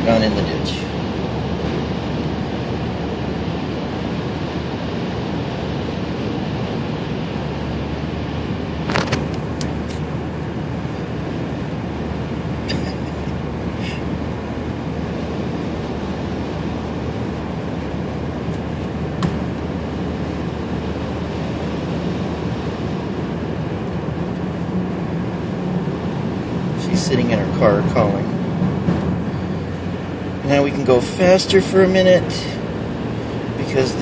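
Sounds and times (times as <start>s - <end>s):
car road and engine noise: 0.0s - 34.0s.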